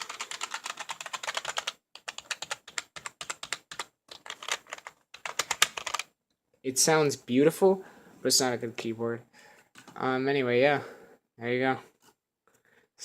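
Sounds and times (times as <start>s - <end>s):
computer keyboard typing: 0.0s - 6.1s.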